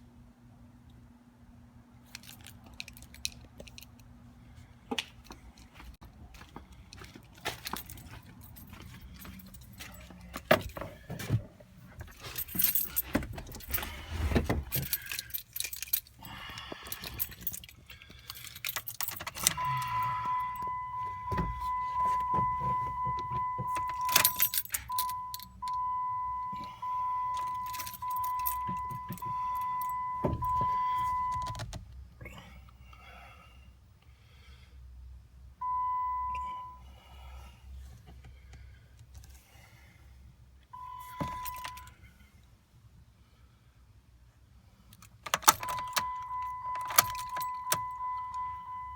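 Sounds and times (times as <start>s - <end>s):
keys jangling and clicking: 2.1s - 4.1s, 6.4s - 10.8s, 12.0s - 14.0s, 14.6s - 25.8s, 27.3s - 31.6s, 41.0s - 41.9s, 44.9s - 48.5s
vehicle warning chime: 18.5s - 31.7s, 35.6s - 36.9s, 40.7s - 42.0s, 45.3s - 48.9s.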